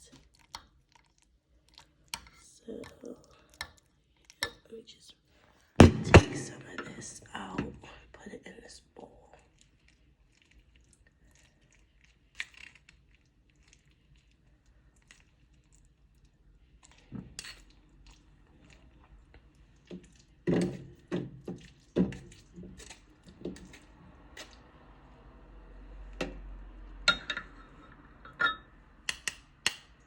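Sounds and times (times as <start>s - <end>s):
kitchenware clicking and knocking: 5.8s - 6.9s, 27.1s - 29.8s.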